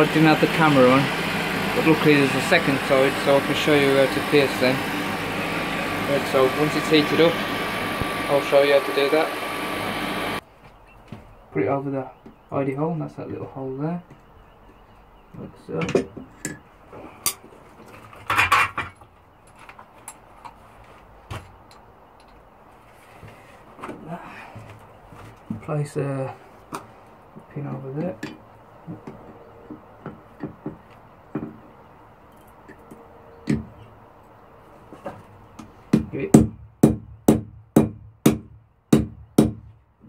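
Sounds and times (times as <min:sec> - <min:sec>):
hammer on metal: 0:35.9 - 0:39.7.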